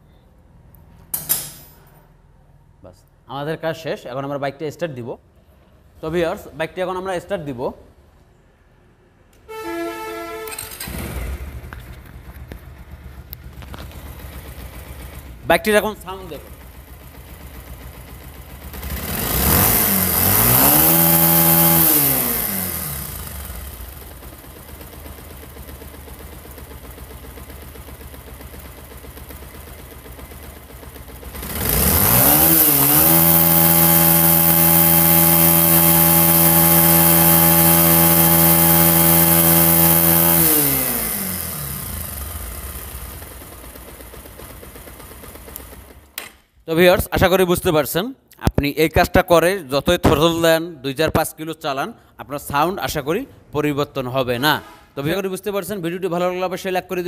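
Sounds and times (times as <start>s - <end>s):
motorcycle engine idling and revving: 10.7s - 46.2s.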